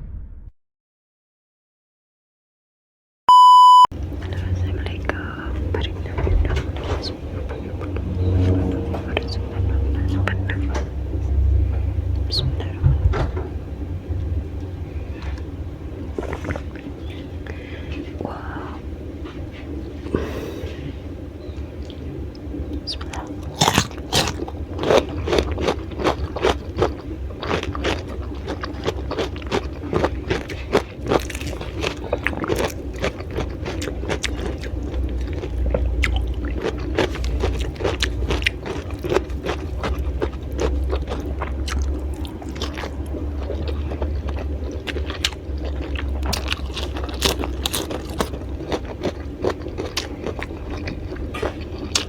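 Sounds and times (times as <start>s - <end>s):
low steady rumble: 3.6s - 52.0s
crunching raw vegetables: 22.8s - 52.0s.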